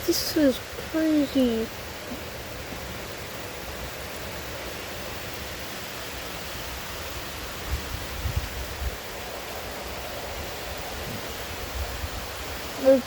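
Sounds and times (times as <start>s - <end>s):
heavy rain pouring: 0.0s - 13.0s.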